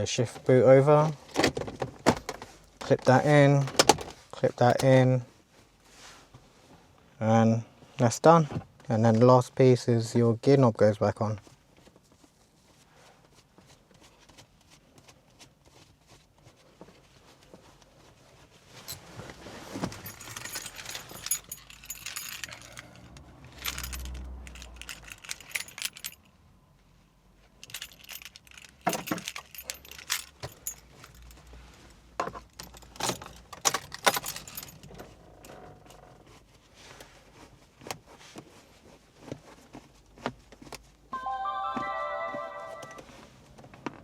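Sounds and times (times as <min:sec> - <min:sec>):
clicks and rattles: 0:01.4 - 0:05.0, 0:19.8 - 0:26.2, 0:27.6 - 0:31.4
rustling: 0:11.5 - 0:26.3, 0:27.6 - 0:32.9
metallic jingling: 0:19.7 - 0:26.3, 0:27.6 - 0:31.4, 0:32.6 - 0:34.9.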